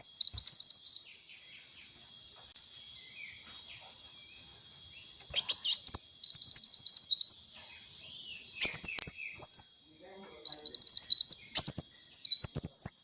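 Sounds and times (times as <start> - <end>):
bird singing high rapid chirps: 0.0 - 1.9, 5.0 - 13.0.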